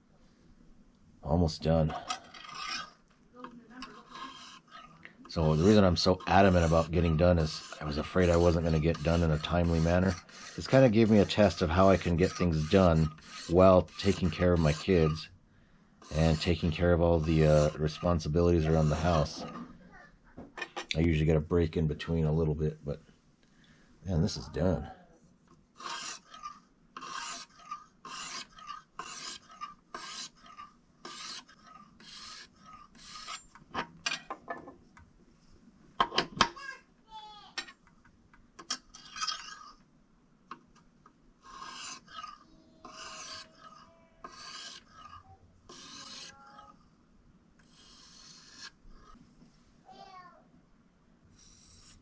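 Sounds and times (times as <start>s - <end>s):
knife scraping on sharpening stone: 2.1s - 15.2s, 25.8s - 33.6s, 38.7s - 39.8s, 41.4s - 46.8s, 47.6s - 49.2s, 51.4s - 52.0s.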